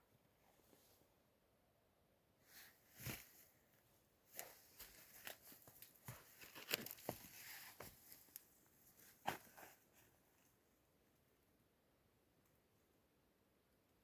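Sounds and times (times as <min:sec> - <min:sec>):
footsteps crunching on forest floor: 0:04.4 - 0:08.4.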